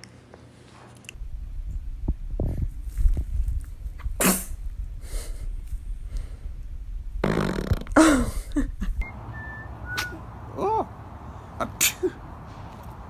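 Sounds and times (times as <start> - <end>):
baby sneezing: 10.0 - 10.2, 11.8 - 12.2.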